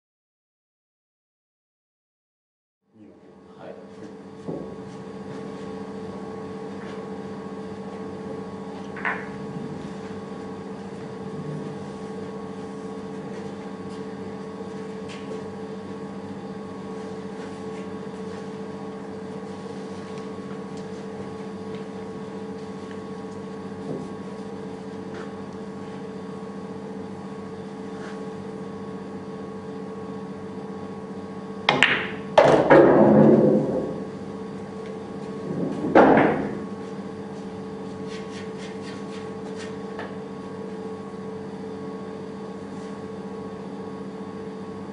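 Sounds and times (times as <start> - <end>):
room hum: 2.9 - 44.9
billiard balls clacking: 8.9 - 9.4, 31.7 - 34.1, 35.5 - 36.7.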